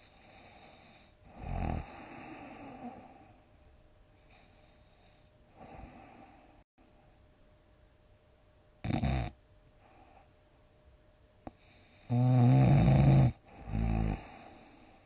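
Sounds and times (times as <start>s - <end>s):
loud rough snoring: 0.0s - 3.2s, 8.8s - 9.4s, 12.0s - 14.7s.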